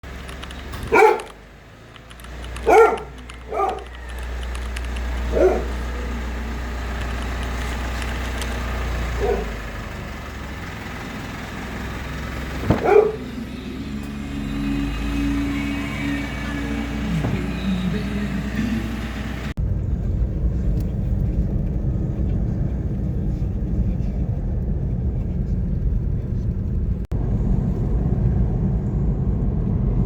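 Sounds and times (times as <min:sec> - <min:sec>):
low steady rumble: 0:00.3 - 0:30.0
dog barking: 0:00.8 - 0:01.4, 0:02.4 - 0:04.2, 0:05.1 - 0:06.2, 0:09.0 - 0:09.6, 0:12.7 - 0:13.4.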